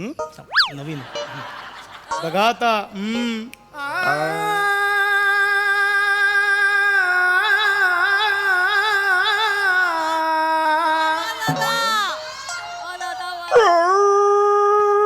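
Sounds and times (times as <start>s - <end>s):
man imitating dog howl: 13.5s - 15.0s.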